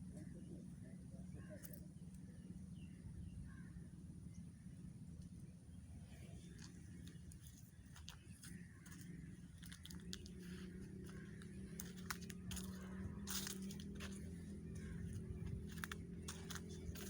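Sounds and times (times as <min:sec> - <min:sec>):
low steady hum: 0:00.0 - 0:17.0
crunching on dry leaves and twigs: 0:06.4 - 0:17.0.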